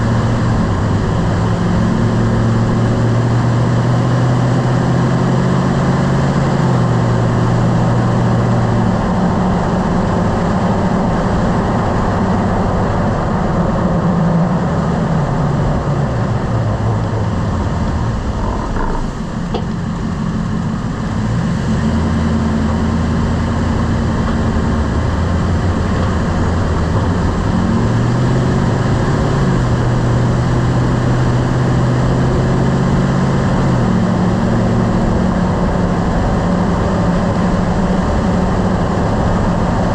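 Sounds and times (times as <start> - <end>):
truck engine: 0.0 - 39.9.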